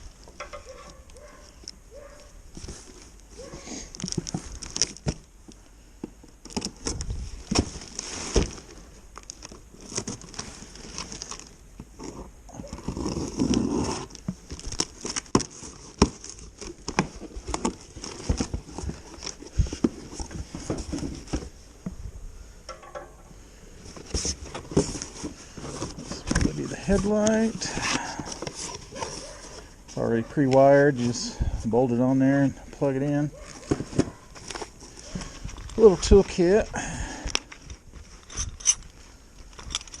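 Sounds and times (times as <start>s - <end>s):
parts clicking and knocking: 0.2s - 1.8s, 22.6s - 23.3s
packaging rustling: 0.6s - 5.6s, 6.4s - 21.6s, 23.8s - 30.0s, 33.4s - 36.6s.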